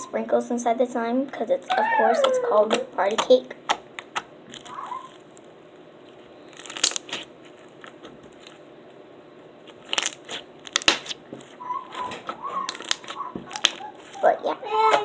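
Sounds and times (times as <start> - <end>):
slime squished with crackling pops: 6.1 - 8.6, 9.6 - 14.2.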